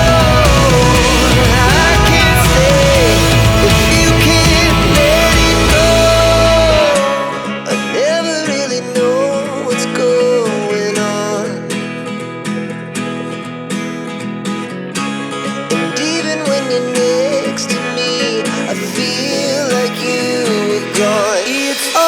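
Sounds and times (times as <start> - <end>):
full band song: 0.0 - 9.8, 18.5 - 22.0
person singing: 0.0 - 11.7, 15.7 - 22.0
acoustic guitar: 0.0 - 22.0.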